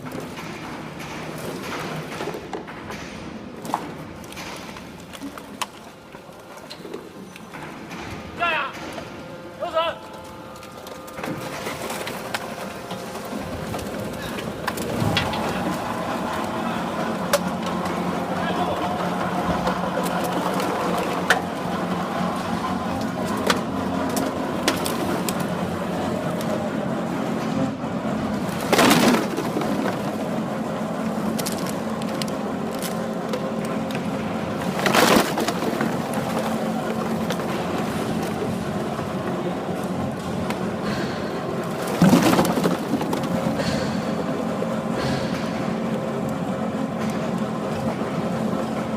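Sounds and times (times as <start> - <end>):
baler machine drone: 6.8 - 48.9.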